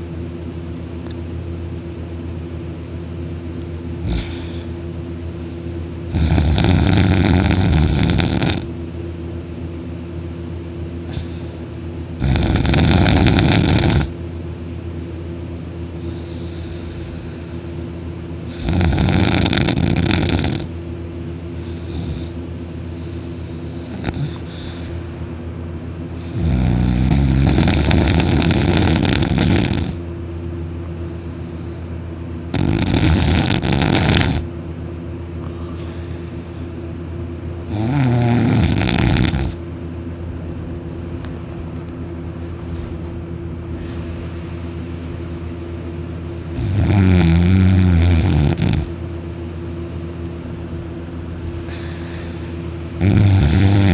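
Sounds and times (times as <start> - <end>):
steady low hum: 0.0 - 53.9
man snoring loudly: 4.0 - 4.8, 6.1 - 8.7, 12.2 - 14.2, 18.5 - 20.7, 21.8 - 22.4, 23.7 - 24.8, 26.2 - 30.0, 32.5 - 34.5, 37.6 - 39.6, 46.5 - 48.9, 53.0 - 53.9.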